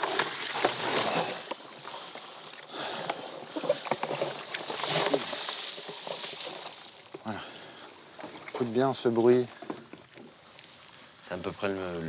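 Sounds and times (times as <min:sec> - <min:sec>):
rush of water: 0:00.0 - 0:12.0
water splashing and dripping: 0:00.0 - 0:12.0.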